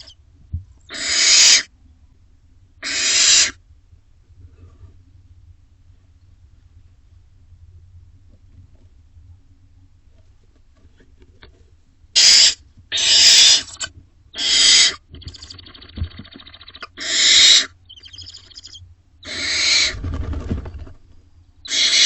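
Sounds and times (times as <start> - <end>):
owlets hissing screeches: 12.2 - 15.0, 17.0 - 20.0, 21.7 - 22.0
owlets buzzing and chittering: 14.4 - 20.9.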